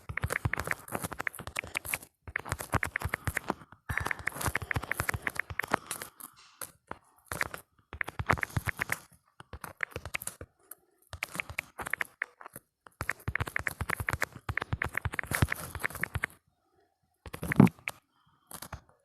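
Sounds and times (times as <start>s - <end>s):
smartphone keyboard typing clicks: 0.0s - 6.0s, 7.3s - 10.4s, 11.1s - 16.4s, 17.2s - 18.8s.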